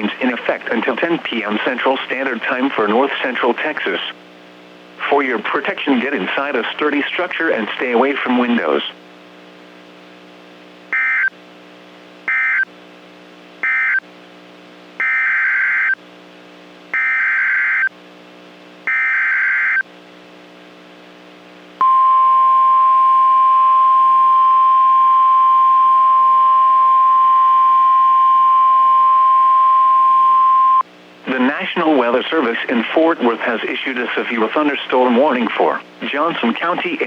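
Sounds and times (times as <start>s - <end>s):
steady warning alarm tone: 11.0s - 11.3s, 12.3s - 12.7s, 13.6s - 14.0s, 15.0s - 16.0s, 17.0s - 17.9s, 18.9s - 19.8s, 21.8s - 30.8s
low steady hum: 19.9s - 37.0s.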